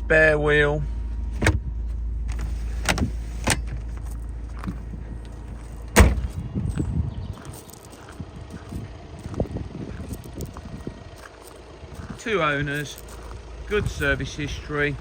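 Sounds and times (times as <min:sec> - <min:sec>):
low steady rumble: 0:00.0 - 0:15.0
car boot clicks and knocks: 0:01.3 - 0:01.7, 0:05.9 - 0:06.3
car boot thump: 0:01.3 - 0:01.7, 0:05.9 - 0:06.4.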